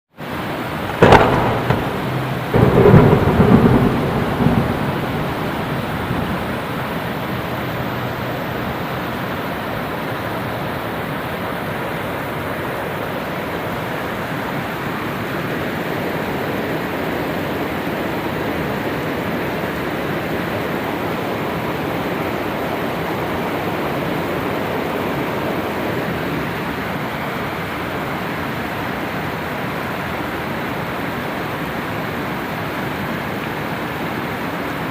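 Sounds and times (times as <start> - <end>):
heavy rain: 0.1 - 34.9
thunder rumbling: 0.8 - 8.4.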